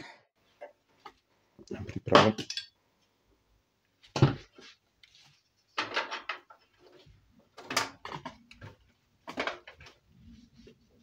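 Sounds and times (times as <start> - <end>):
computer hardware knocking and clattering: 5.8 - 6.6, 7.5 - 10.0.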